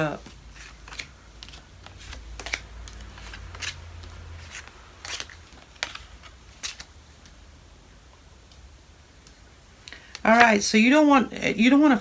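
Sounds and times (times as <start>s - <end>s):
cards clicking on a table: 0.2s - 7.4s.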